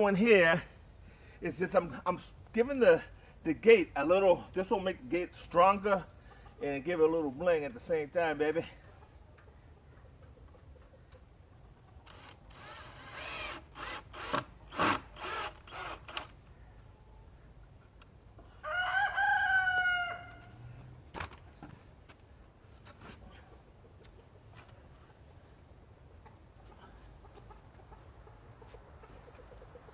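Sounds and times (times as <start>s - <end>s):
chickens clucking: 8.7s - 12.0s, 23.4s - 29.9s
rooster crowing: 18.6s - 20.6s.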